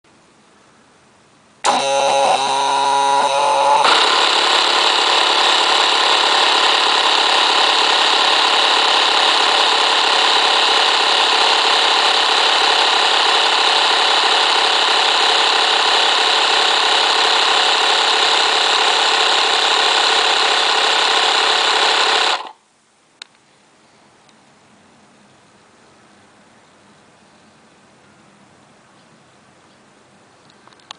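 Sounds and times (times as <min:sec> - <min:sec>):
electric air compressor running: 0:01.6 - 0:22.6
click: 0:23.2 - 0:23.4, 0:30.4 - 0:30.9.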